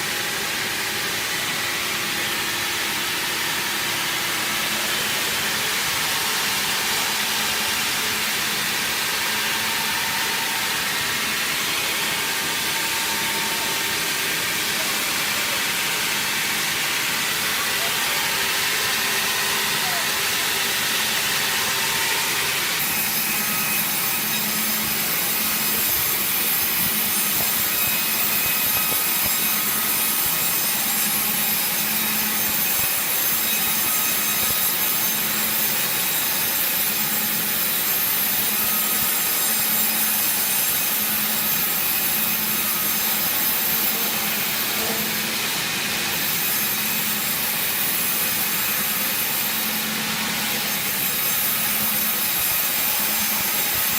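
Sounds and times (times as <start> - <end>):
saw cutting through wood: 0.0 - 53.9.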